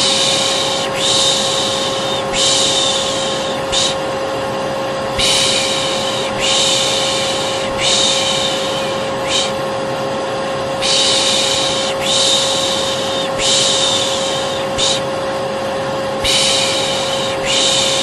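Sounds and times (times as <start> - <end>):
person shushing: 0.0 - 4.1, 5.1 - 9.6, 10.8 - 15.1, 16.2 - 18.0
vacuum cleaner humming: 0.0 - 18.0.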